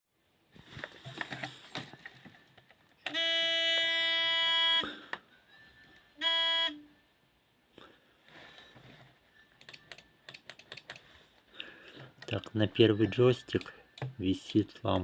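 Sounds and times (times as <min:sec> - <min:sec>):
electronic buzzer beeps: 0:03.1 - 0:04.8, 0:06.2 - 0:06.8.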